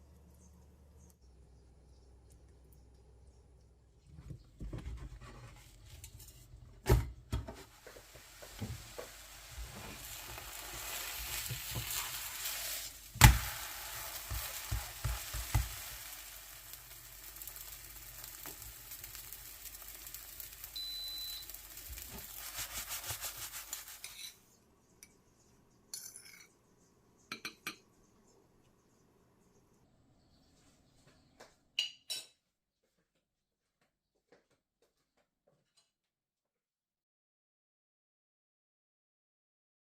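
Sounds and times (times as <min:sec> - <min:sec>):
batter sizzling in hot oil: 0:07.6 - 0:24.3.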